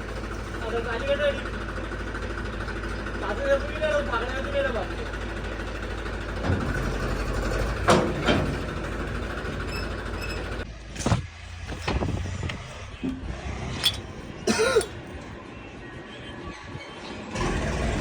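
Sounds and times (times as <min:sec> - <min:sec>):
diesel engine running: 0:00.0 - 0:16.0, 0:16.6 - 0:18.0
sharp knocks and clinks: 0:13.0 - 0:14.2
cough-like sound: 0:14.5 - 0:15.0.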